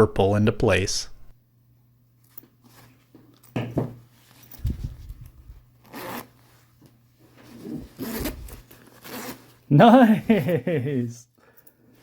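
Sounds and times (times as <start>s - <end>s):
zipper scraping: 5.8s - 6.6s, 7.3s - 9.7s.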